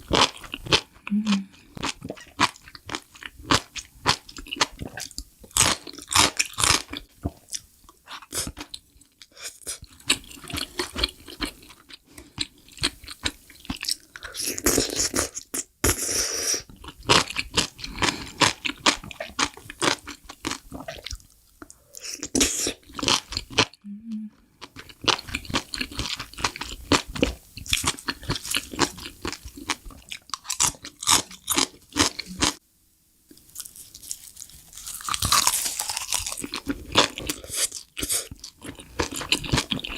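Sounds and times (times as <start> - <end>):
crunching and chewing mushrooms: 24.6 - 32.6, 33.5 - 39.9.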